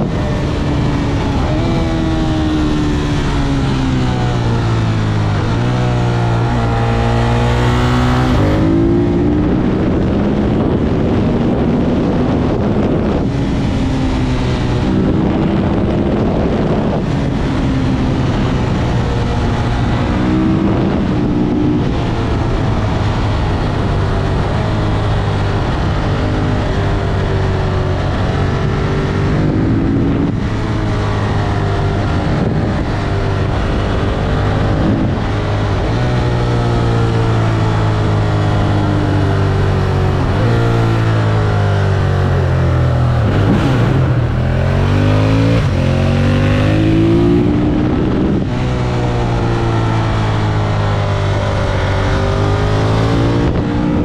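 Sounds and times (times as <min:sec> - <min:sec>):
motorcycle engine pulling hard: 0:00.0 - 0:54.0
wind rushing over microphone: 0:00.0 - 0:54.0.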